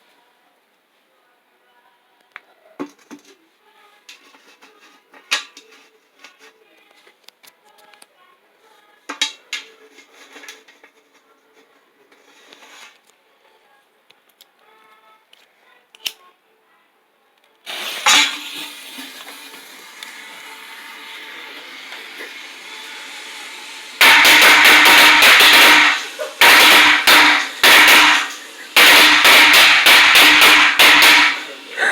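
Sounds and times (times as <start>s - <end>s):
loud burst into steady hiss: 17.7s - 31.9s.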